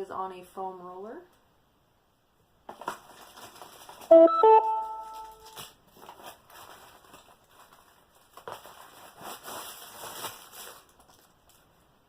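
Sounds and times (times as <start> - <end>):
packaging rustling and knocking: 2.7 - 11.6.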